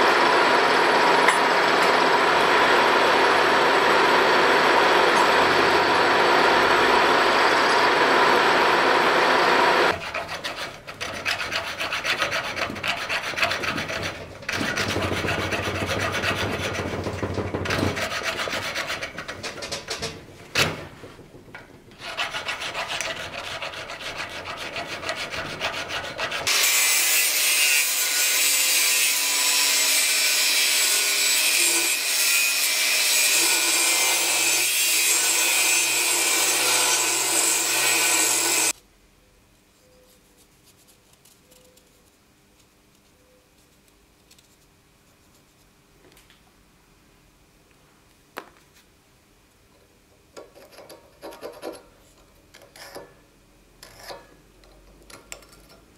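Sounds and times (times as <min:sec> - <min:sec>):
hand tool rasping on metal: 0:09.9 - 0:19.9, 0:21.9 - 0:30.0.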